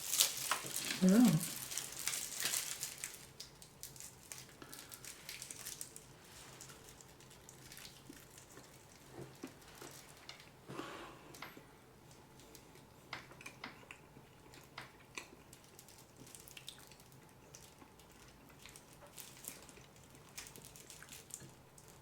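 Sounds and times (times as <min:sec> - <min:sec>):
chewing with mouth clicks: 0:12.5 - 0:22.0.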